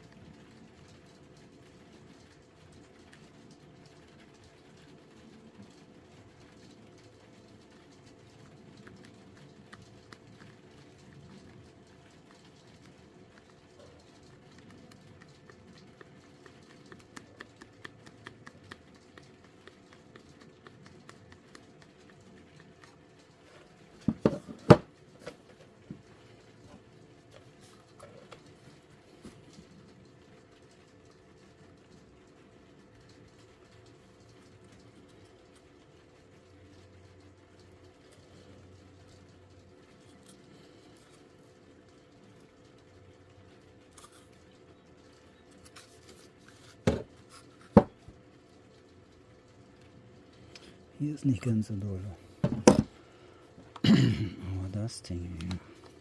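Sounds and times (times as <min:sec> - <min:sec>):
light ticks of hard objects: 0:00.0 - 0:52.2, 0:54.7 - 0:56.0.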